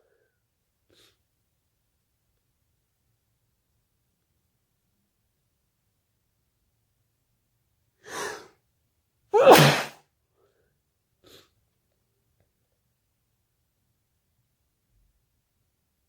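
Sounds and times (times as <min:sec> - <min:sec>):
faint short breath: 0:08.0 - 0:08.5
person sneezing: 0:09.4 - 0:09.9.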